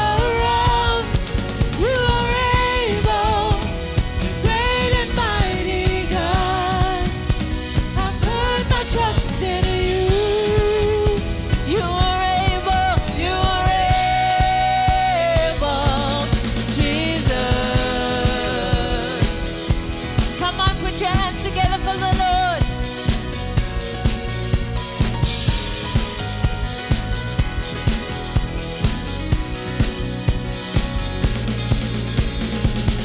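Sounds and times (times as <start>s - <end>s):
worship team singing: 0.0s - 23.2s
band with drum kit: 0.0s - 33.0s.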